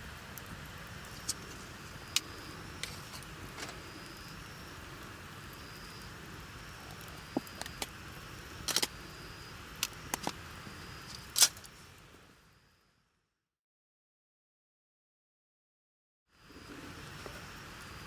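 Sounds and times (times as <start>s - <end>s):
campfire crackling: 0.0s - 12.7s, 16.4s - 18.0s
steady low hiss: 0.0s - 13.0s, 16.3s - 18.0s
fire popping sharply: 0.4s - 11.8s.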